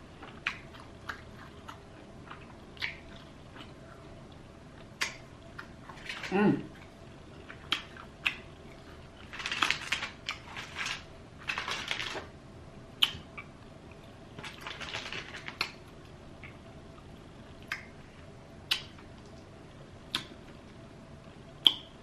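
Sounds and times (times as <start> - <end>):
crunching and chewing fried chicken: 0.0 - 12.4, 13.0 - 20.7
mouth smacks: 13.0 - 13.5, 18.7 - 19.0.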